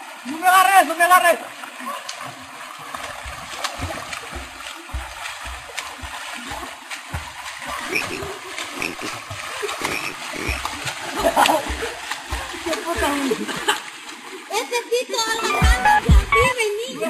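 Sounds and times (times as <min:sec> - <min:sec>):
water splashing from swimmers: 0:00.0 - 0:17.0
low thumps of churning water: 0:01.5 - 0:14.6.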